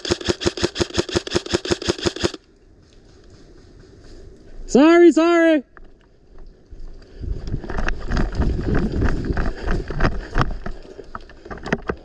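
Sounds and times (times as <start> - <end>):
microphone handling noise: 7.2 - 12.0.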